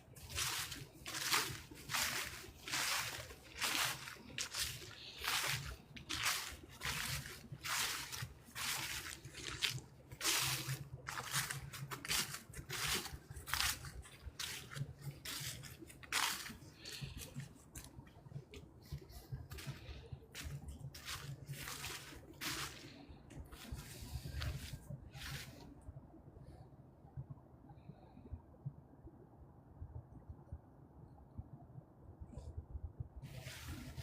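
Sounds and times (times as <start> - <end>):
footsteps crunching dry leaves: 0.0 - 25.6, 33.3 - 34.0.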